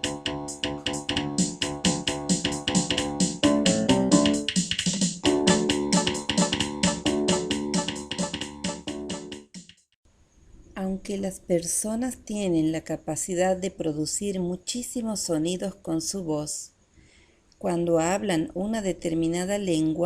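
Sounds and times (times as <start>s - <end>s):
keyboard chords: 0.0s - 9.5s
fast steady beat: 0.0s - 9.9s.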